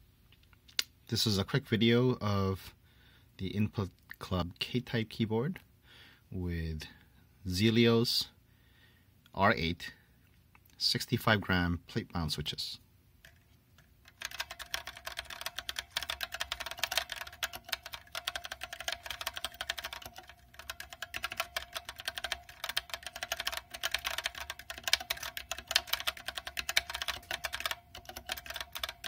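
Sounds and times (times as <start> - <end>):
typing on mechanical keyboard: 13.3 - 29.0.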